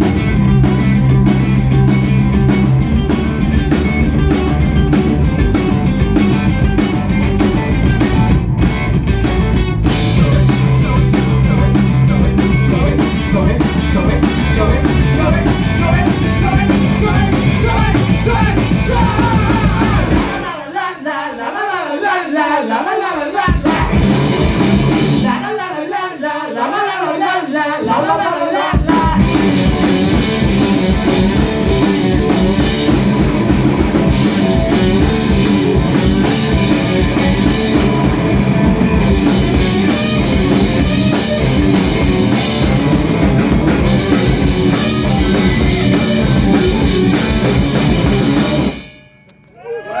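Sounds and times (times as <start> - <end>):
live rock band playing: 0.0 - 20.5, 23.5 - 25.4, 28.8 - 49.0
person singing: 10.0 - 24.4.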